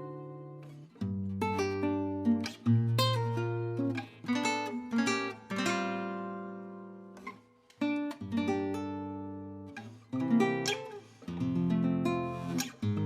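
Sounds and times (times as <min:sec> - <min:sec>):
classical guitar melody: 0:00.0 - 0:13.0.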